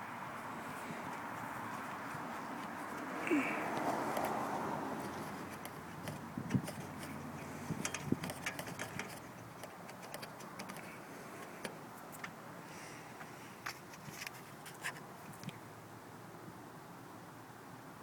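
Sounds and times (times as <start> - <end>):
plastic and metal parts clicking: 5.0 - 7.2, 7.8 - 12.4.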